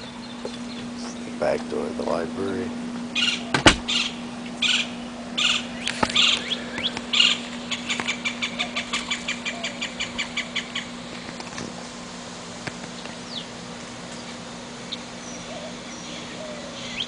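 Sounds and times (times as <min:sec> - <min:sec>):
harsh bird calls: 0:00.0 - 0:11.3, 0:12.8 - 0:17.0
steady low hum: 0:00.0 - 0:17.0
rapid short bird notes: 0:02.5 - 0:11.1.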